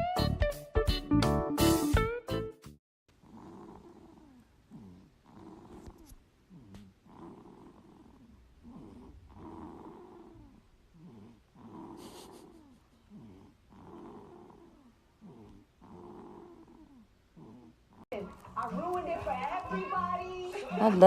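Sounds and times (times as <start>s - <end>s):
baby snoring softly: 3.1s - 18.1s.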